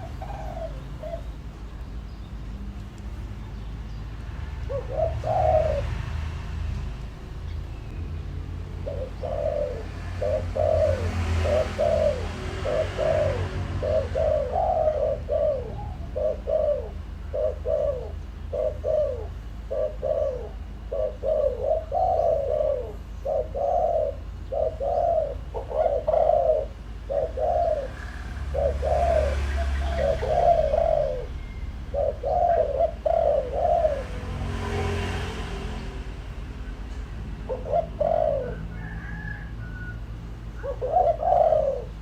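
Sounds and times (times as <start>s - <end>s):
dove cooing: 0.0s - 1.7s, 4.4s - 7.0s, 8.2s - 42.0s.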